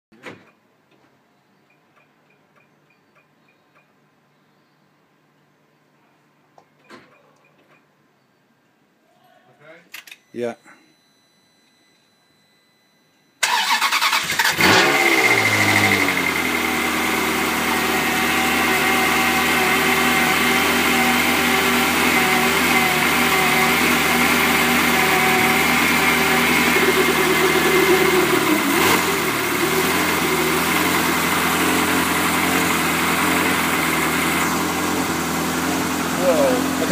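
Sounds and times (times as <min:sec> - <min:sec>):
car engine starting and idling: 0:13.4 - 0:36.9.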